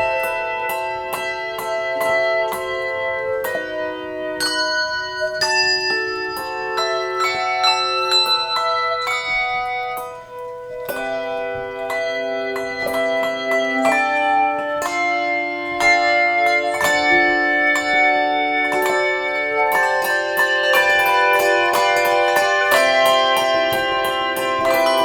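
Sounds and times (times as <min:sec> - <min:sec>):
handbell choir playing: 0:00.0 - 0:25.0.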